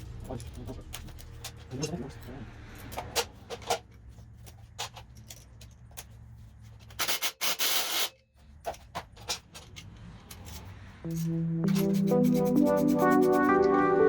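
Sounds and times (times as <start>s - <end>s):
tools and metal parts clicking: 0.0s - 10.8s.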